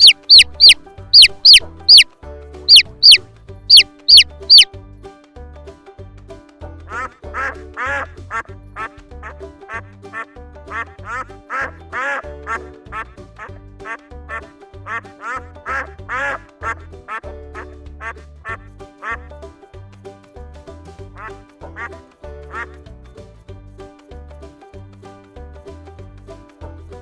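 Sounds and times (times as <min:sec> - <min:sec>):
ducks quacking: 0:00.0 - 0:02.0, 0:02.7 - 0:04.7.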